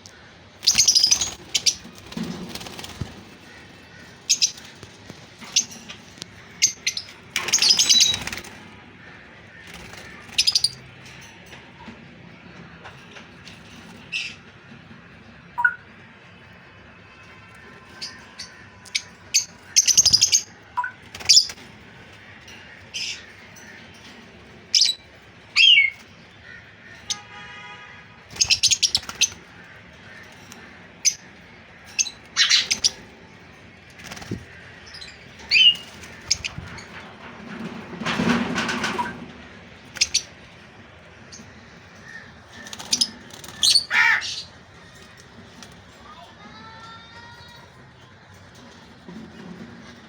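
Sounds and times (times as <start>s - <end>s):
lovebirds chirping: 0.6s - 10.8s, 28.3s - 36.9s.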